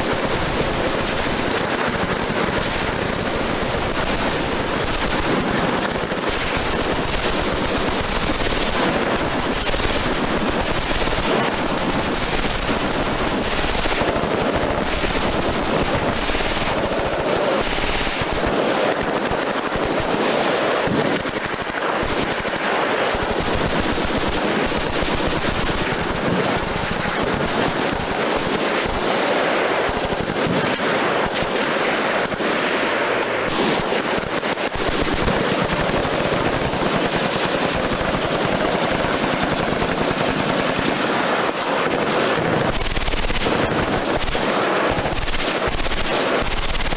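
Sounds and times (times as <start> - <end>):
automatic machine-gun fire: 0.0 - 46.9.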